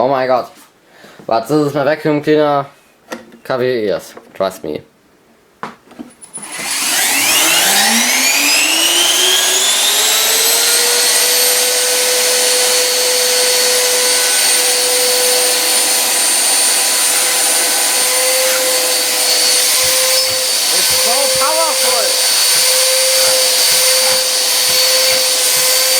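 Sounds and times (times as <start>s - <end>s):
vacuum motors whining: 6.2s - 25.9s.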